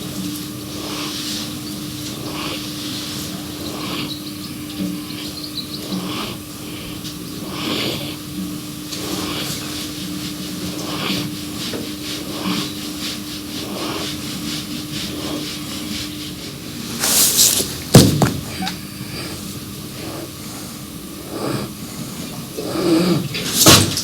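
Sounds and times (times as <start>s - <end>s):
foal snoring: 5.1s - 8.4s, 10.6s - 11.3s, 18.4s - 23.4s
sharp knock: 17.9s - 18.6s.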